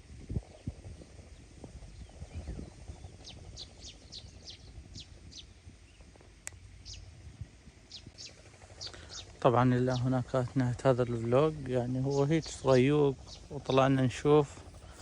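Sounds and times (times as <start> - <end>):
bird chirping: 1.9 - 6.1, 6.8 - 7.1, 7.9 - 15.0.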